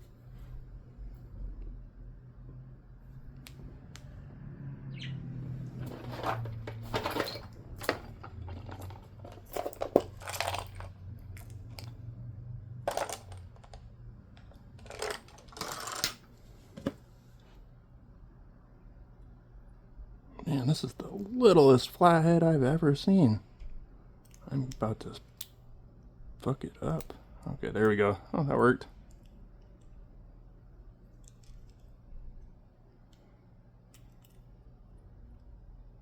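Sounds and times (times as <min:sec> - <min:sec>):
scraping and rustling: 0:05.6 - 0:10.9
metal tools clicking and clinking: 0:05.8 - 0:10.9.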